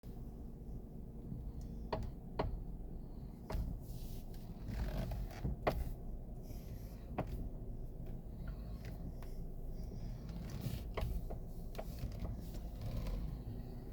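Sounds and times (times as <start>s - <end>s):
low steady rumble: 0.0s - 13.9s
sharp knocks from steering column: 1.9s - 2.7s, 3.4s - 3.8s, 5.0s - 6.0s, 10.7s - 13.2s.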